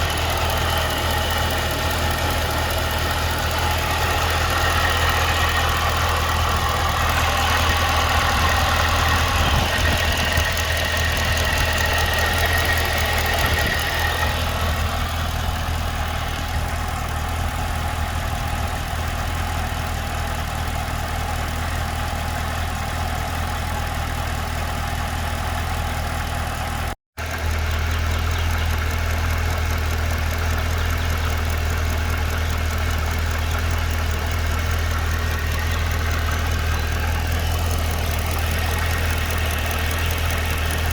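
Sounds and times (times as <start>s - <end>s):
car engine idling: 0.0s - 40.9s
engine ticking noise: 0.0s - 40.9s.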